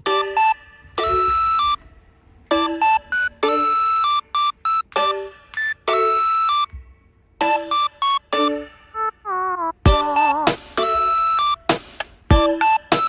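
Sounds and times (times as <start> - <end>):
bright electronic melody: 0.0 - 1.9, 2.5 - 6.7, 7.4 - 13.0.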